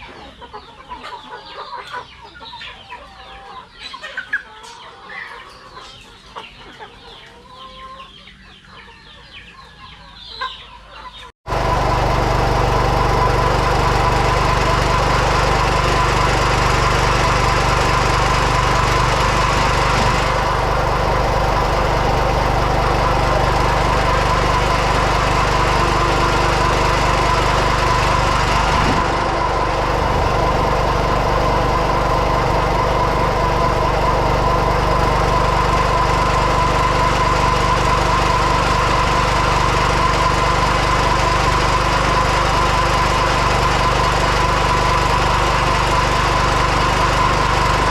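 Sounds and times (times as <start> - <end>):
chickens clucking: 0.0 - 12.2
small engine running: 11.5 - 47.9.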